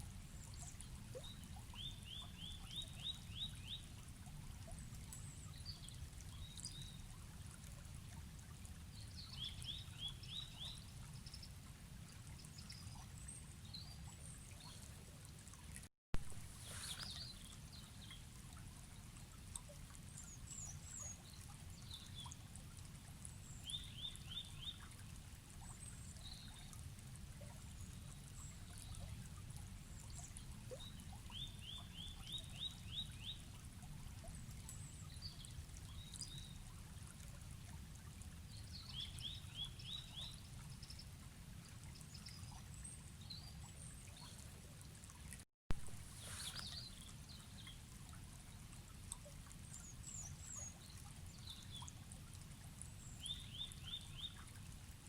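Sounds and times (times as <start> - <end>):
bird chirps: 16.6 - 17.3, 46.2 - 47.0.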